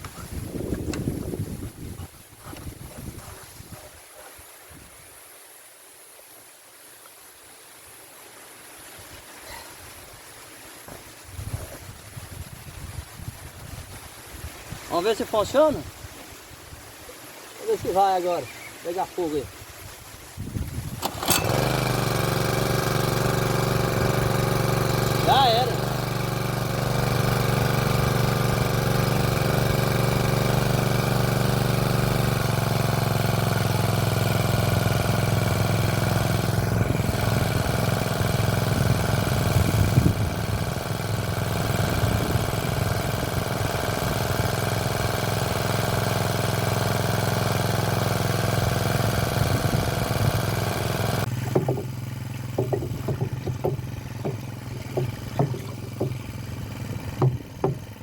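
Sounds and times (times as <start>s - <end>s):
water pump engine running: 20.6s - 58.0s
irregular knocks: 51.3s - 58.0s.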